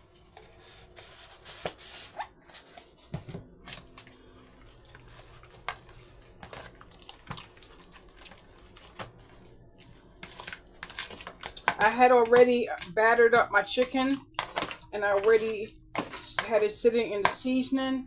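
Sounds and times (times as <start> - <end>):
food packaging rustling: 0.0 - 13.0
utensils clicking and tapping: 9.8 - 13.0, 13.7 - 16.6.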